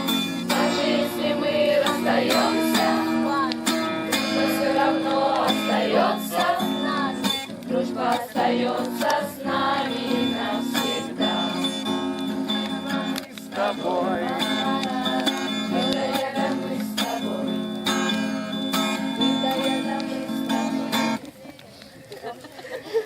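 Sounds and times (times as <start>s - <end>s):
people singing: 0.0s - 21.2s
guitar accompaniment: 0.0s - 21.4s.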